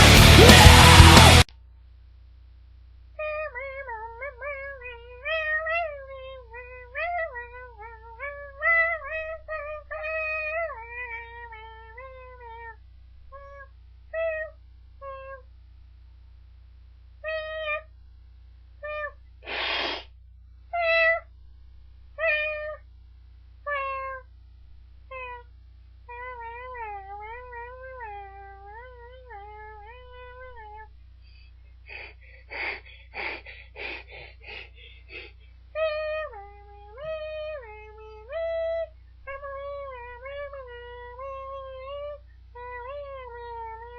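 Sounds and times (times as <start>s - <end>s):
cat meowing: 17.2s - 17.9s, 20.8s - 21.3s, 22.2s - 22.8s, 23.7s - 24.2s, 25.1s - 25.5s
cat rough cries: 31.9s - 38.9s.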